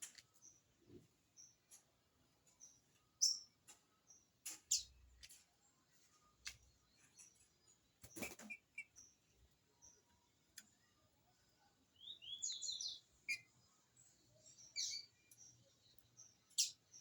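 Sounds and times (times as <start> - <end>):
bird chirping calls: 2.4 - 5.0, 11.9 - 17.0.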